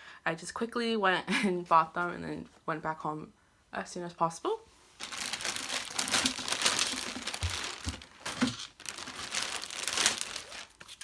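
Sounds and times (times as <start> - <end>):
packaging crinkling and rustling: 5.0 - 11.0.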